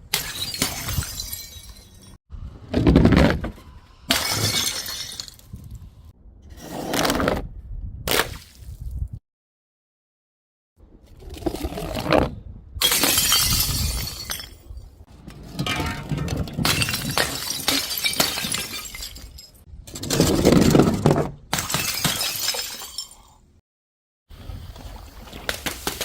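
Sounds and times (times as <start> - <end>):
glass bottles shattering: 0.1 - 2.2, 4.1 - 5.7, 12.8 - 14.7, 15.6 - 19.7, 21.5 - 23.4.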